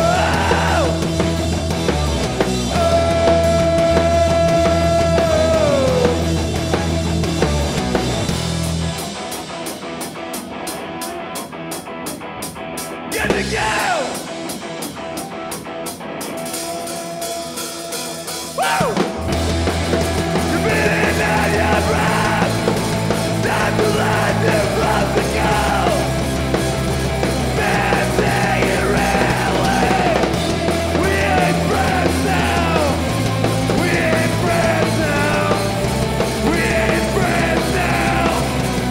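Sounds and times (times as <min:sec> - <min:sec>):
live rock band: 0:00.0 - 0:38.9
person shouting vocals: 0:18.6 - 0:19.1.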